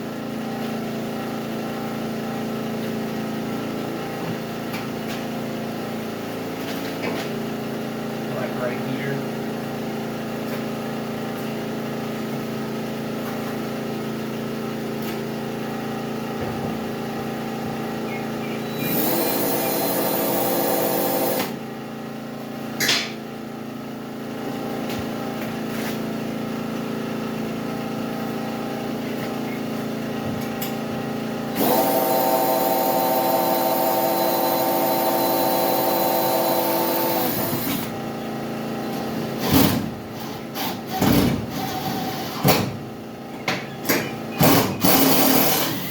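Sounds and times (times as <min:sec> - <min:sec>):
power drill driving screws: 0:18.7 - 0:21.6, 0:31.6 - 0:37.9, 0:44.6 - 0:45.9.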